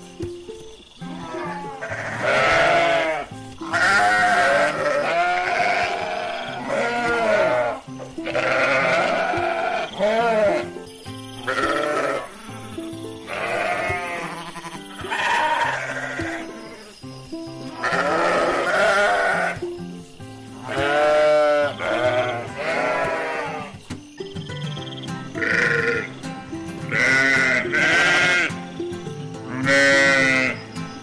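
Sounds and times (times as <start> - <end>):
background music: 0.0 - 31.0
sheep bleating: 1.1 - 10.8, 11.4 - 12.4, 13.3 - 16.9, 17.7 - 19.6, 20.6 - 23.8, 25.4 - 26.1, 26.9 - 28.5, 29.5 - 30.6.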